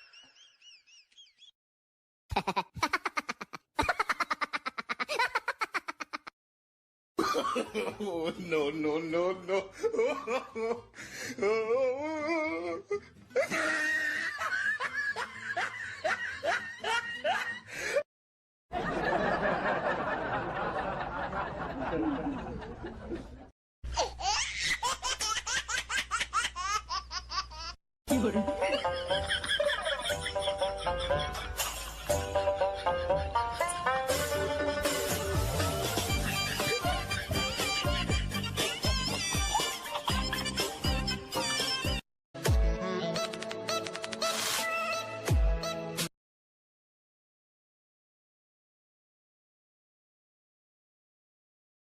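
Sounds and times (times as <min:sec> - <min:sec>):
group laughter: 0:00.0 - 0:01.5, 0:02.3 - 0:06.3, 0:07.2 - 0:08.6, 0:09.5 - 0:10.9, 0:13.4 - 0:17.7, 0:18.7 - 0:23.5, 0:28.1 - 0:37.8
rapid staccato comic laughter: 0:02.3 - 0:06.3, 0:28.2 - 0:40.8.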